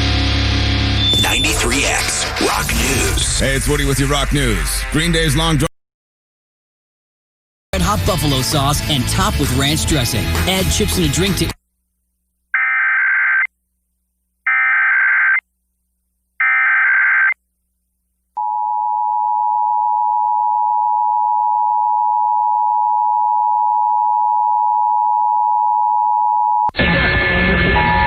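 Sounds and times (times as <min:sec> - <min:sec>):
two-tone attention signal: 0:01.0 - 0:01.9
warbling data screech: 0:01.0 - 0:03.1, 0:12.6 - 0:13.5, 0:14.5 - 0:15.4.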